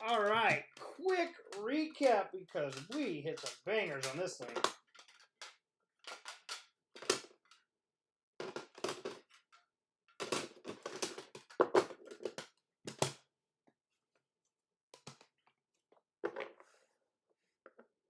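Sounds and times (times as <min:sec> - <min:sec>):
plastic cases clacking and scraping: 0:00.0 - 0:07.5, 0:08.4 - 0:09.5, 0:10.2 - 0:13.1.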